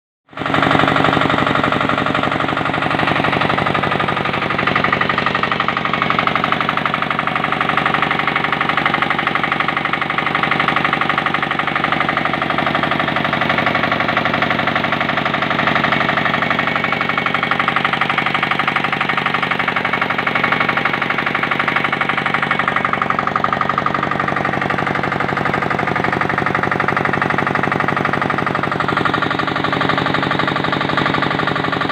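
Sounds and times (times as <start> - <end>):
engine running steadily: 0.3 - 31.9.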